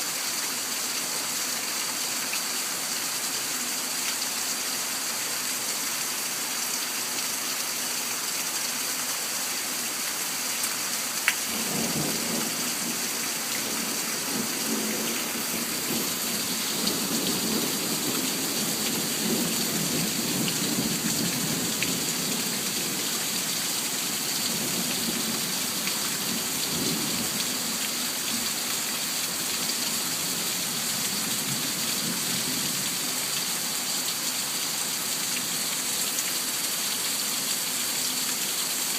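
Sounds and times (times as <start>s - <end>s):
steady rain: 0.0s - 38.9s
thunder crack and rumble: 11.5s - 13.0s.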